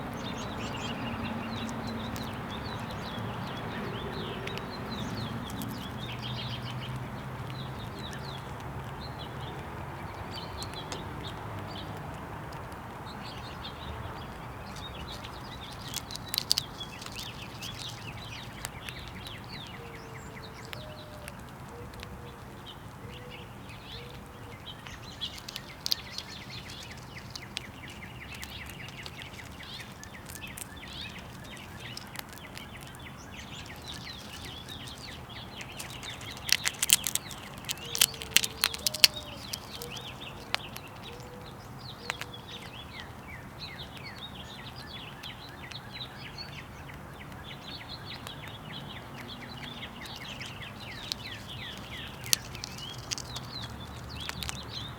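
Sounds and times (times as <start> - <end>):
small birds chirping: 0.0 - 54.9
sharp clicks and taps: 25.2 - 41.2, 50.9 - 54.8.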